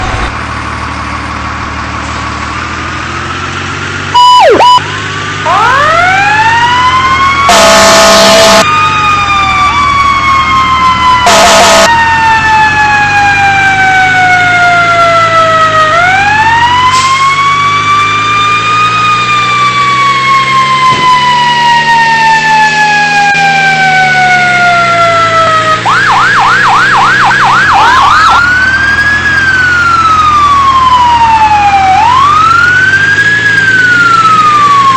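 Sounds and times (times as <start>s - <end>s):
fire engine running: 0.0s - 34.9s
fire engine siren wailing: 3.7s - 34.9s
siren chirp: 4.1s - 34.9s
air horn blasts: 4.2s - 4.9s, 7.5s - 8.6s, 11.2s - 12.0s
fast siren yelps: 4.2s - 18.1s, 18.8s - 34.9s.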